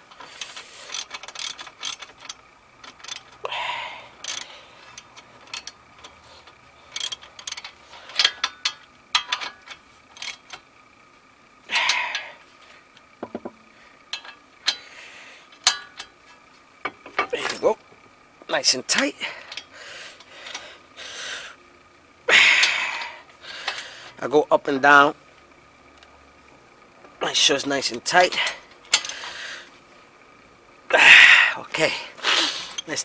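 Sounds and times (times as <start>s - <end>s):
hand ratchet clicking: 0.1s - 10.6s.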